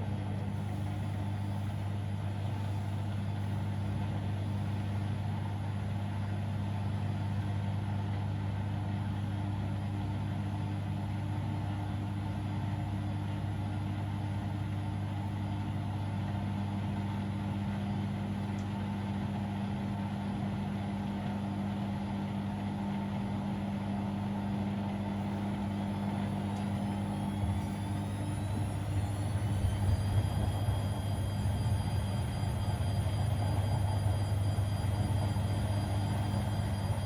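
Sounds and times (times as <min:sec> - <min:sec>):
washing machine humming: 0:00.0 - 0:37.0
faint rising whine: 0:25.3 - 0:37.0.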